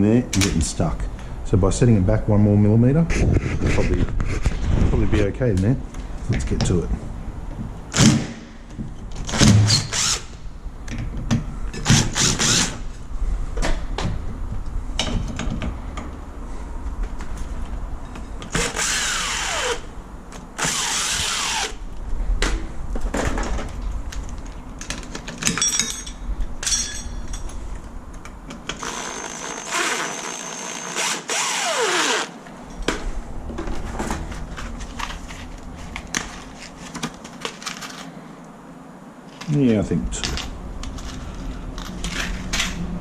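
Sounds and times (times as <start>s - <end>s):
cordless drill whining: 11.9s - 12.8s, 18.5s - 19.9s, 20.6s - 21.8s, 28.7s - 32.4s.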